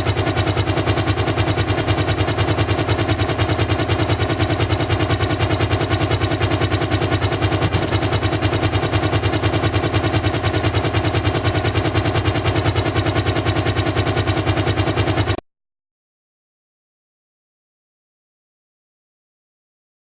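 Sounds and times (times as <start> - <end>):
helicopter rotor beating: 0.0 - 15.4.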